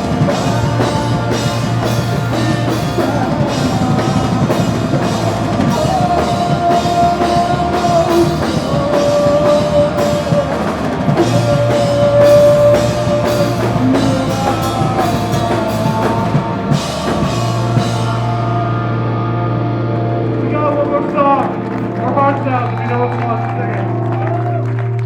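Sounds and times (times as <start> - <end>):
drums and cymbals beat: 0.0 - 18.4
live rock band playing: 0.0 - 25.0.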